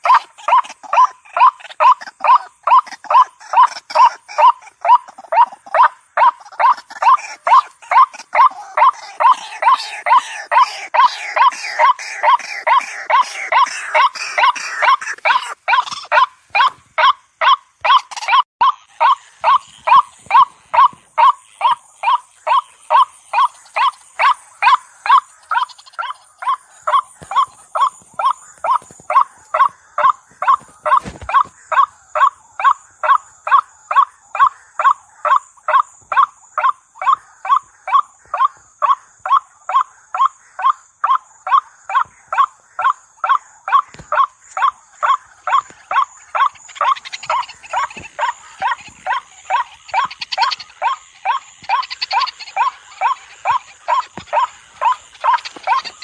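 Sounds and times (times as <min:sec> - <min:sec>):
waterhen harsh call: 0:00.0 - 0:32.3, 0:43.7 - 0:56.0.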